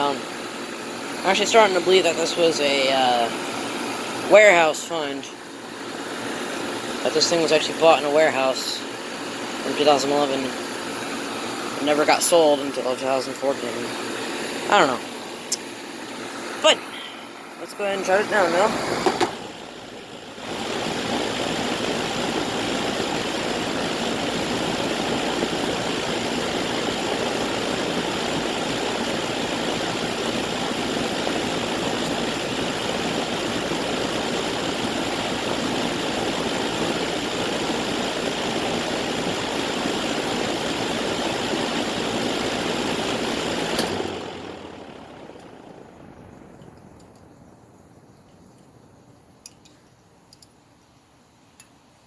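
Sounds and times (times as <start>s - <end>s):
air conditioner fan running: 0.0s - 52.0s
air conditioner shutoff click: 18.7s - 19.6s, 43.4s - 44.3s.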